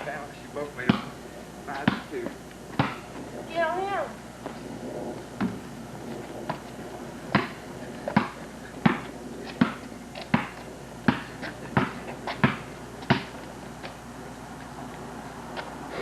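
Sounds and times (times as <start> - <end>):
basketball bouncing: 0.8 - 1.1, 1.8 - 3.0, 7.3 - 13.4.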